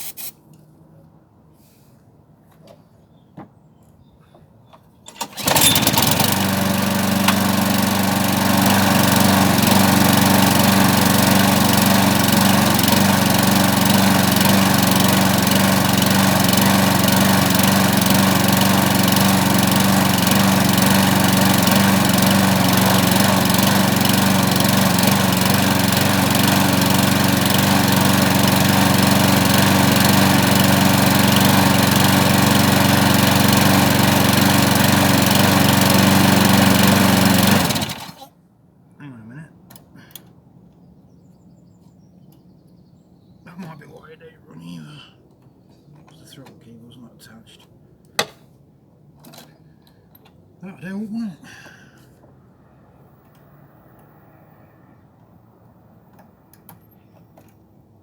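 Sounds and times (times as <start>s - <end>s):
lawn mower engine running: 5.1s - 38.3s.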